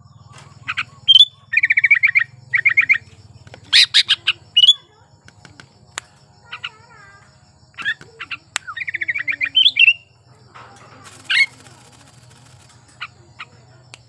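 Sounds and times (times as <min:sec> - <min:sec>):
bird singing chirping notes: 0:00.0 - 0:10.4.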